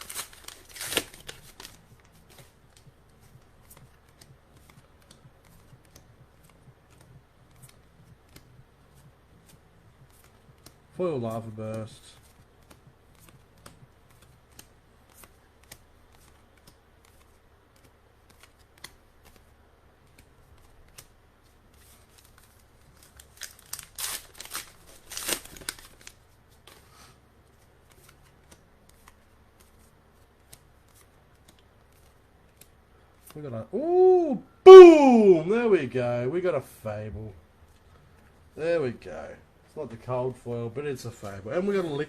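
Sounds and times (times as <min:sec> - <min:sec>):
trading cards rustling: 0:00.0 - 0:33.6.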